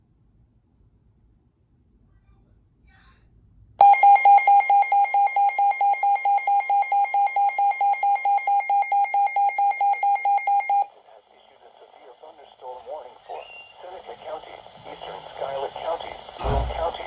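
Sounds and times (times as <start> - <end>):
rapid pulsing alarm beep: 3.8 - 10.9.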